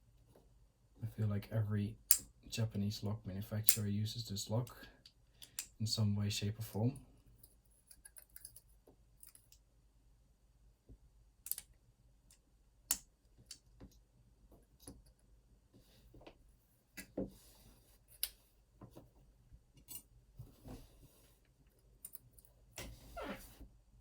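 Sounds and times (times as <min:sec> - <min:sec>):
metallic clicks of tools on lock: 0:11.5 - 0:11.7.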